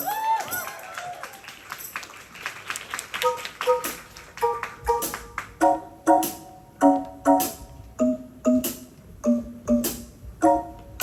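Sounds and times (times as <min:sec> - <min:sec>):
keyboard staccato chords: 0:03.2 - 0:11.0.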